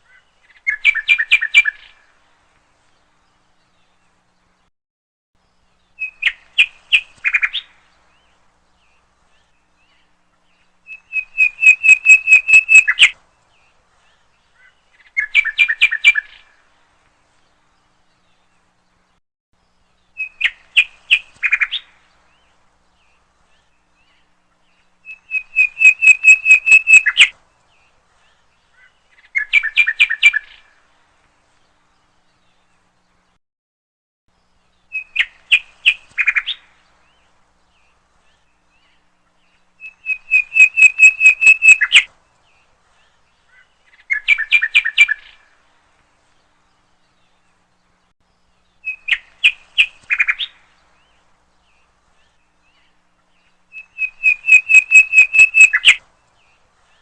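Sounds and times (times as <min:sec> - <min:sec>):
bird chirping and trilling: 0:00.0 - 0:02.0, 0:08.9 - 0:13.2, 0:14.5 - 0:16.6, 0:20.1 - 0:27.4, 0:28.7 - 0:30.7, 0:34.8 - 0:36.8, 0:37.8 - 0:42.1, 0:43.5 - 0:45.5, 0:48.6 - 0:56.0.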